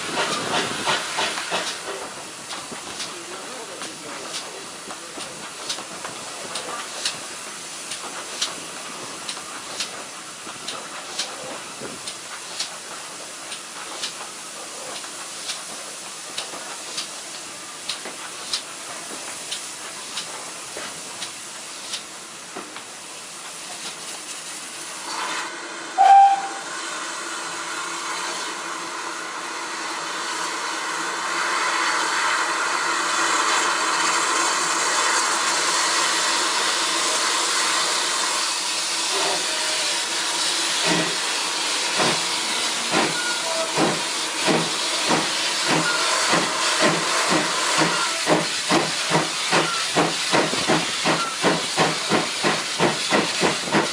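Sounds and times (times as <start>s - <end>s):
steam hissing: 0.0s - 53.9s
short steam whistle: 25.4s - 26.8s.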